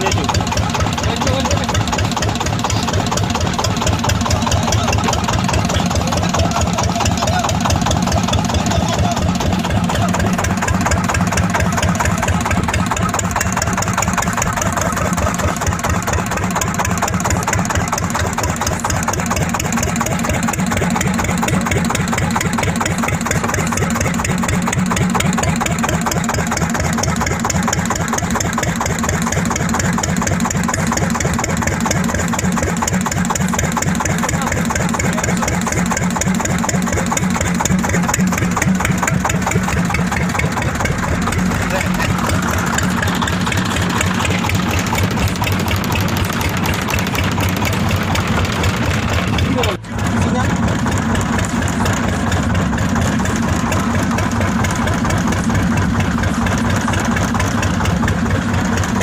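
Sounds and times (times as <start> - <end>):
boat engine chugging: 0.0 - 59.0.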